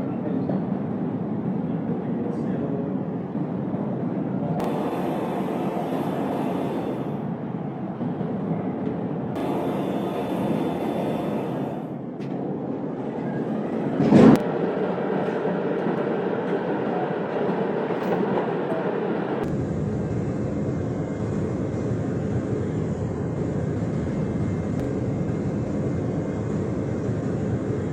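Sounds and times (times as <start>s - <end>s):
mechanical engine noise: 4.6s - 7.3s, 9.4s - 12.0s.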